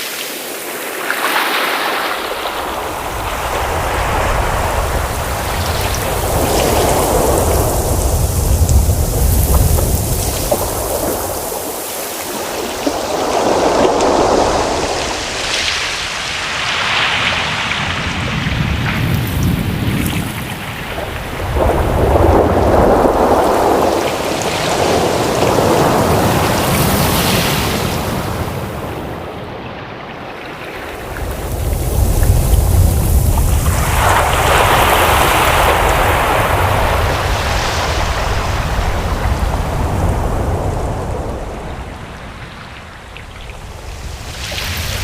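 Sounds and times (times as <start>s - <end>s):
waves washing in and drawing back: 0.0s - 45.0s.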